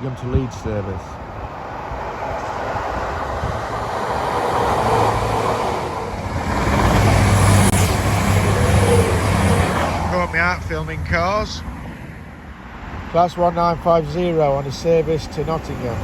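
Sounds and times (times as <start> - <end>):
rail rumble: 1.0 - 13.8
diesel train engine drone: 1.0 - 16.0.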